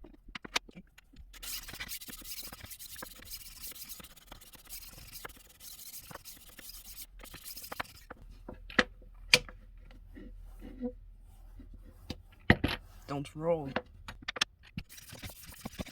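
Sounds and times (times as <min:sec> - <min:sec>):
knife sharpener grinding steel: 0:01.3 - 0:08.1, 0:14.8 - 0:15.9.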